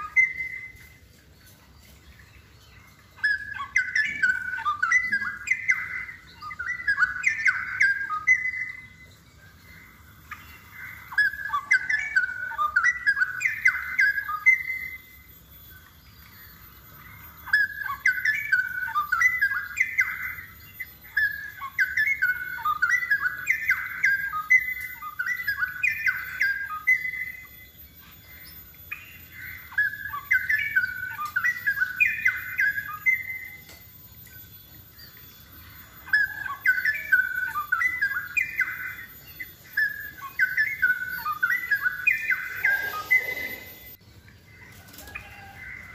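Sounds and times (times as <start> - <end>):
bird warbling song: 0.0 - 45.9.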